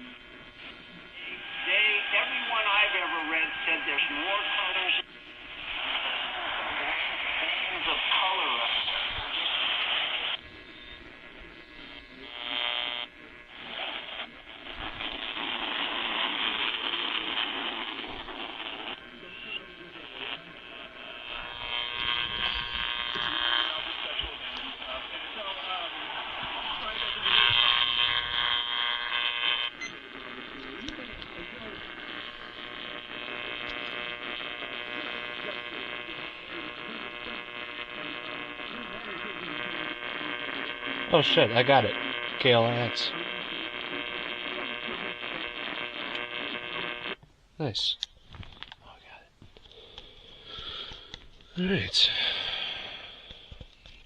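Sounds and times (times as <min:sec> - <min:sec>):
faint radio station audio: 0:00.0 - 0:54.0
radio hiss and static: 0:00.0 - 0:54.0
steady electrical hum: 0:00.0 - 0:54.0.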